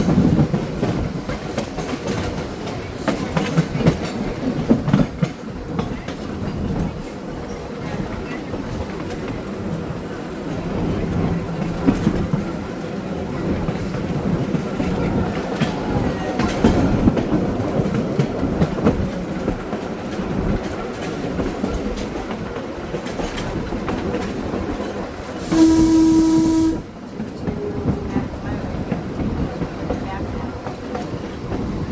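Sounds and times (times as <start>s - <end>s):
trolley car rolling on track: 0.0s - 31.9s
trolley whistle blast: 25.4s - 26.8s.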